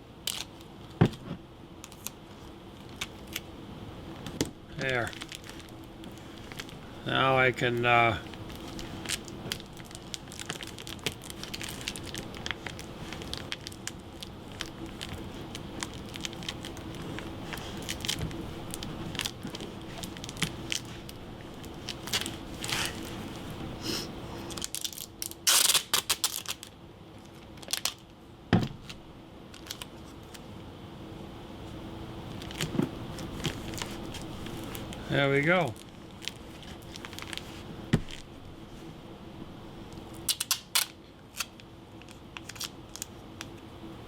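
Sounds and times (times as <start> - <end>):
faint steady hum: 0.0 - 44.0
paper crinkling: 4.8 - 6.9, 8.2 - 23.6, 32.3 - 38.4, 40.2 - 43.6
tape pulled and torn: 24.5 - 26.7, 40.3 - 41.5.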